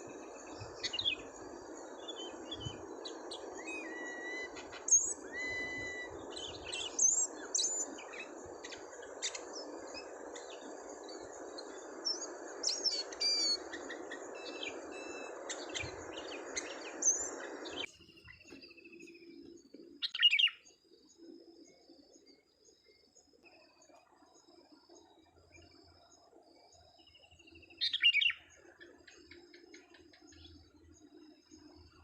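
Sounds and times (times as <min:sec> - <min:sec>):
bird chirping and trilling: 0:00.0 - 0:01.4, 0:02.0 - 0:10.6, 0:11.6 - 0:19.2, 0:20.0 - 0:20.6, 0:27.7 - 0:30.6.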